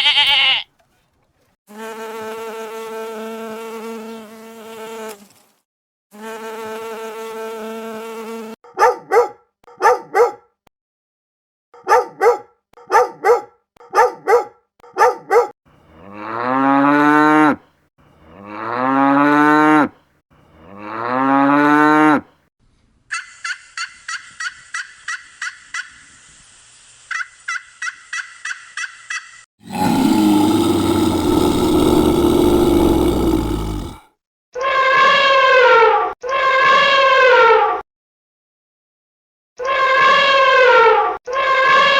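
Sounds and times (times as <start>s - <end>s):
loud rough animal call: 29.6s - 34.1s.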